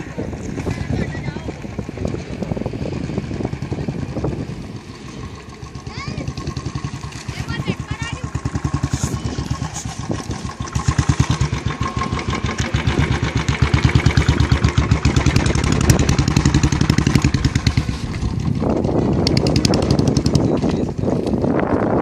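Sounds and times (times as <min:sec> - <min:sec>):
motorcycle engine exhaust thump: 0:08.4 - 0:21.6.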